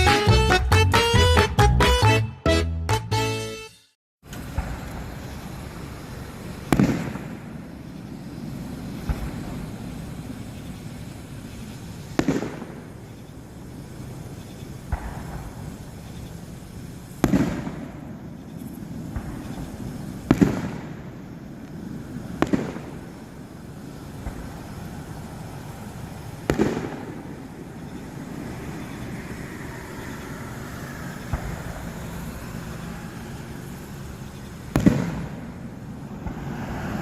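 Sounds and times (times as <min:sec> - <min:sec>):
fireworks booming: 0:04.3 - 0:08.0, 0:08.8 - 0:10.2, 0:11.4 - 0:13.2, 0:14.8 - 0:16.2, 0:17.2 - 0:28.1, 0:31.2 - 0:32.2, 0:34.6 - 0:36.5.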